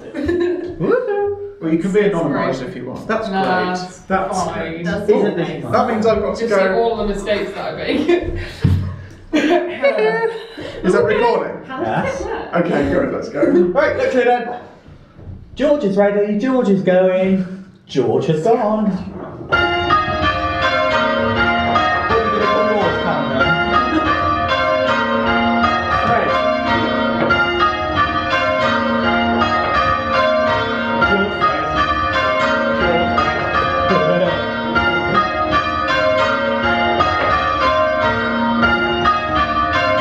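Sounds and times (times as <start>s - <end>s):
church bells change ringing: 19.4s - 40.0s.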